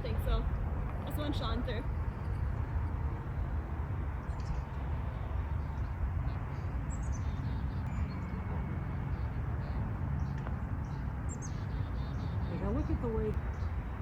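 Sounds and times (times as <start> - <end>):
birds chirping faintly: 0.0 - 14.0
steady low rumble: 0.0 - 14.0.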